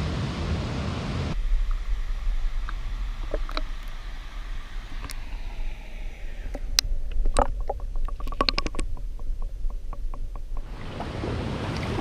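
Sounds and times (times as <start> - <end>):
deep rumble: 0.0 - 12.0
rushing stream water: 1.3 - 12.0
light clicks and knocks: 6.6 - 11.1.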